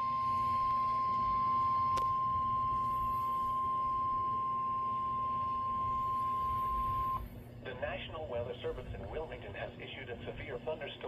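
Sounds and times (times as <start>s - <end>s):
high-pitched alarm beep: 0.0s - 7.3s.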